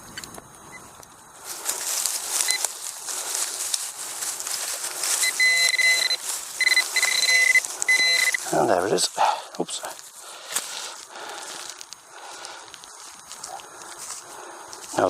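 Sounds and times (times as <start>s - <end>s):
soil being dug and scraped: 1.4s - 15.0s
pinpointer probe high beep: 5.2s - 8.5s.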